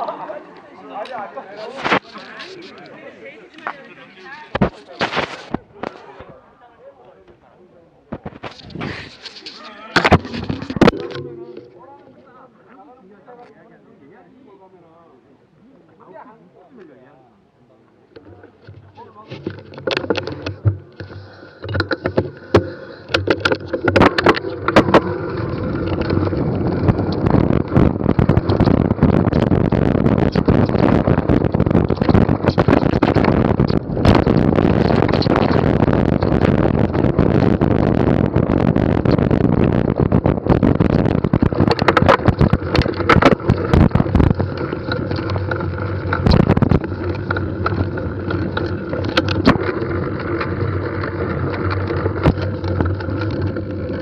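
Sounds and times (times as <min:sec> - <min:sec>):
bike clattering over bumps: 0:18.2 - 0:54.0
tyre noise rushing on dirt: 0:22.2 - 0:54.0.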